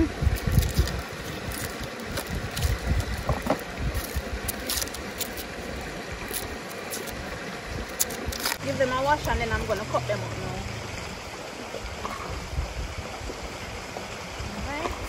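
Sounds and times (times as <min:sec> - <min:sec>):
wind buffeting microphone: 0:00.0 - 0:04.7, 0:11.9 - 0:15.0
river water rushing: 0:00.0 - 0:15.0.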